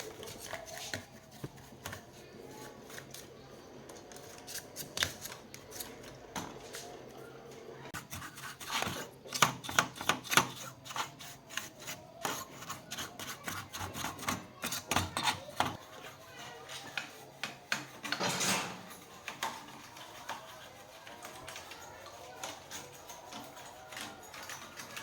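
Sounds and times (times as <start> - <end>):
small tools clicking and tapping: 8.1 - 25.0.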